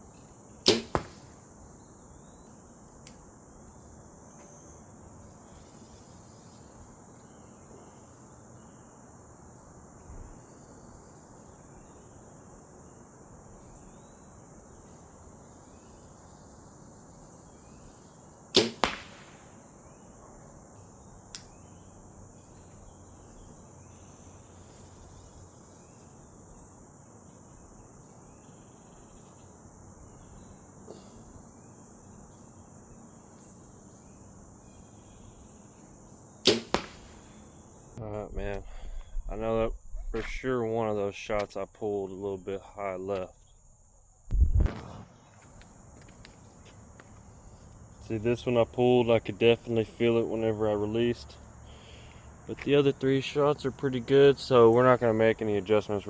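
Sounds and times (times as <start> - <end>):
insect chirring: 0.0 - 56.0
bowstring release crack: 0.6 - 1.3, 18.6 - 19.4, 21.3 - 21.6, 36.4 - 37.3, 44.5 - 46.4
arrow striking target: 0.6 - 1.4, 18.6 - 19.5, 36.4 - 37.3, 44.3 - 45.2.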